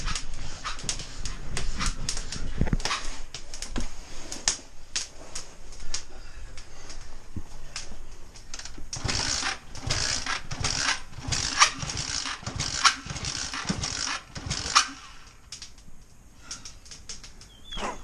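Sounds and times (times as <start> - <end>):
engine pops: 8.9 - 15.2
small motorbike engine running unevenly: 9.0 - 14.9.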